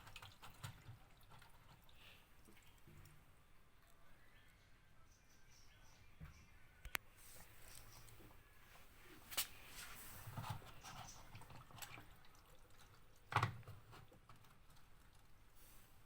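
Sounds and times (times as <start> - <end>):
water dripping and trickling: 0.0 - 4.1, 10.3 - 15.6.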